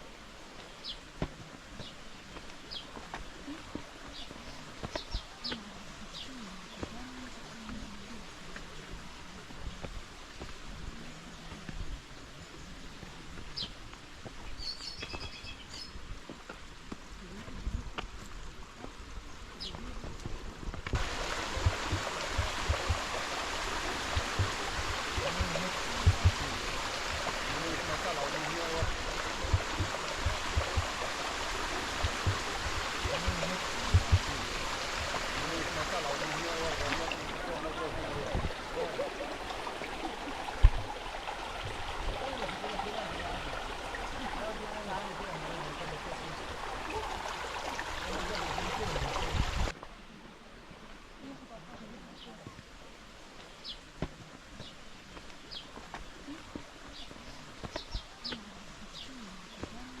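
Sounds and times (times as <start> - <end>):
stream water rushing: 20.9 - 51.3
short low thumps: 24.0 - 27.9, 28.8 - 31.1, 31.9 - 35.8.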